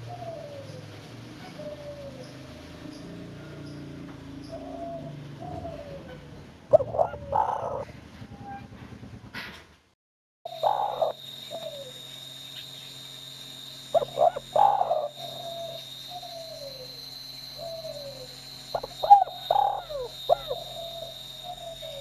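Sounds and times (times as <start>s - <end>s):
dove cooing: 0.0s - 2.7s, 4.4s - 8.0s, 10.5s - 12.0s, 13.9s - 17.0s, 17.6s - 22.0s.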